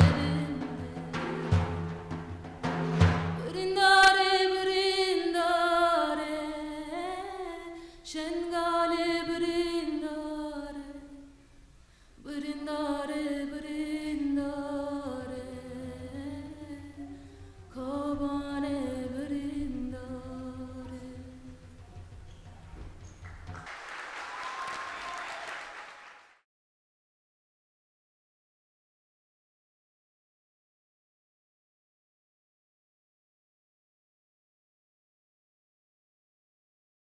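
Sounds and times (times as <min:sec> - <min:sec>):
woman singing unaccompanied: 0:00.0 - 0:01.5, 0:03.4 - 0:11.4, 0:12.2 - 0:22.0
drum strikes: 0:00.0 - 0:04.2.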